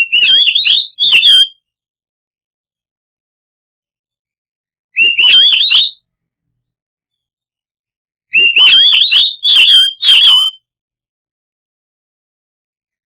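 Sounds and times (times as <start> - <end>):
bird song whistled phrases: 0.0 - 1.6, 5.0 - 6.0, 8.3 - 10.7.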